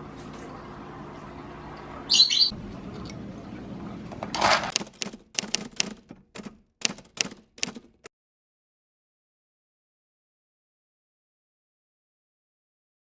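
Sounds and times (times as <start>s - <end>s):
sharp taps: 4.7s - 8.1s.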